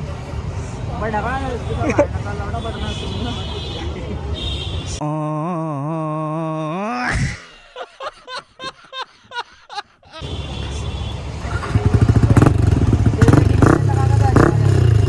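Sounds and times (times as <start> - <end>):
motorcycle engine running: 10.2 - 15.0.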